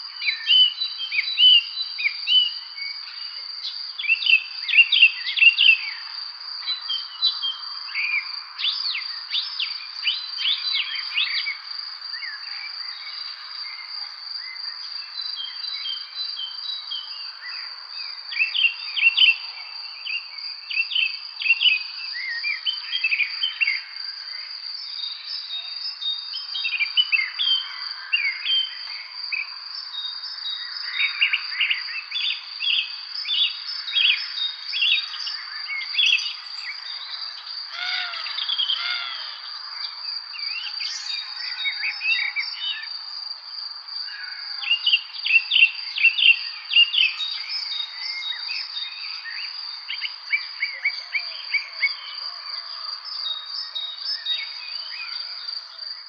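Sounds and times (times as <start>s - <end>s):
songbirds chirping and singing: 0.0s - 56.0s
high-pitched insect trill: 21.1s - 56.0s.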